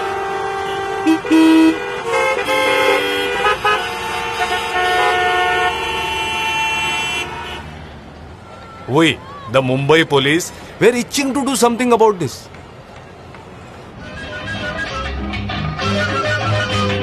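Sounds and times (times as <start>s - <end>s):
vehicle horns honking: 0.0s - 7.9s.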